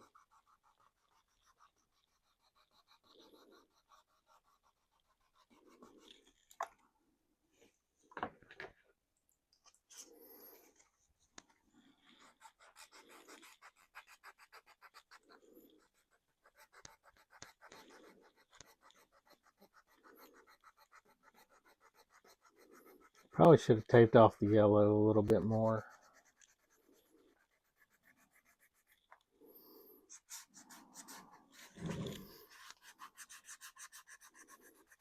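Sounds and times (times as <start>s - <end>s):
sandpaper rubbing plastic: 12.0s - 29.2s, 30.1s - 35.0s.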